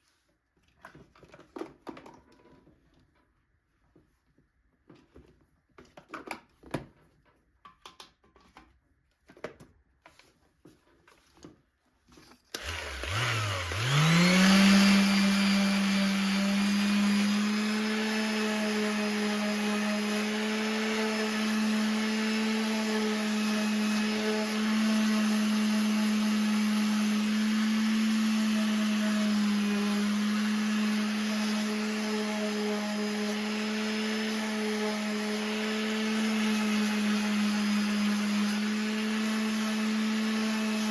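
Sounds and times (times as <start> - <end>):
power tool motor running: 12.5 - 40.9.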